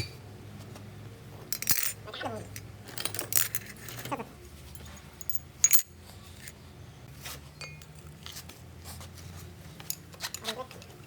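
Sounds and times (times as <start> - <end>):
metal parts clinking: 1.5 - 2.0, 2.9 - 4.2, 5.2 - 6.6.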